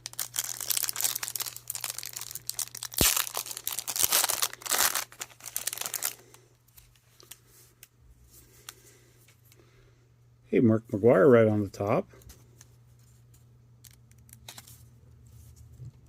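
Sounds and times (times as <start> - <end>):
plastic wrapper tearing and crinkling: 0.0 - 6.4.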